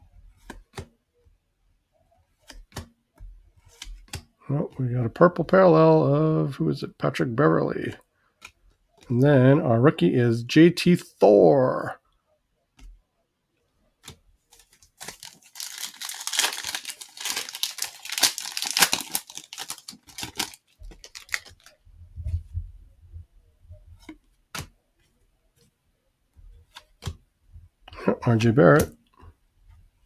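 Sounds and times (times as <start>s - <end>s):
soft handling noises: 13.7s - 27.7s
plastic wrapper tearing and crinkling: 14.6s - 21.8s.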